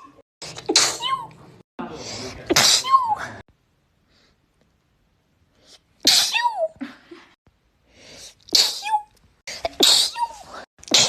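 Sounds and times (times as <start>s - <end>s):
person sneezing: 6.0s - 6.4s, 8.5s - 11.0s
intake of breath: 7.8s - 8.4s.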